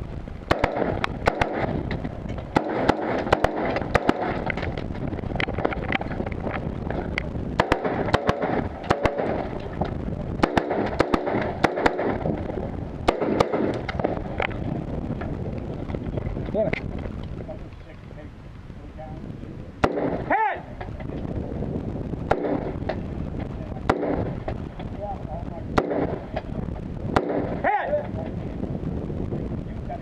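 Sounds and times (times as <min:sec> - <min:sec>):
rifle shots: 0:00.5 - 0:04.8, 0:07.6 - 0:09.8, 0:10.4 - 0:14.3, 0:19.8 - 0:20.3, 0:22.2 - 0:23.0, 0:23.8 - 0:24.5, 0:25.7 - 0:26.5, 0:27.1 - 0:27.7.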